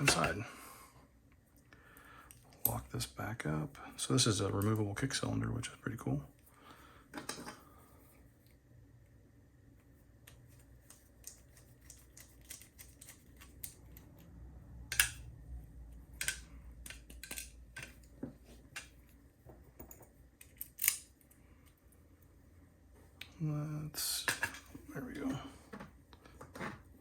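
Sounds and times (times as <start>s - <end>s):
small metallic clicks of lock parts: 14.9s - 15.3s, 16.1s - 18.1s, 20.0s - 21.8s.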